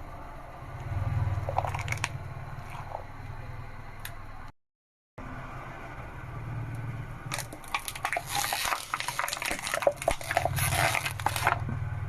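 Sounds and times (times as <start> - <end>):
car engine hum: 0.0 - 4.5, 5.2 - 12.0
tyre crushing crunchy objects: 1.4 - 2.9, 7.3 - 11.8.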